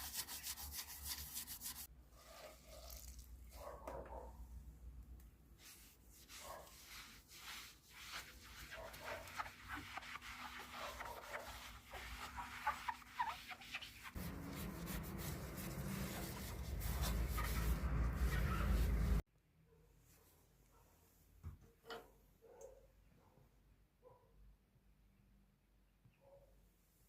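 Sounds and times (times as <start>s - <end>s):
scrubbing glass: 5.6s - 19.2s.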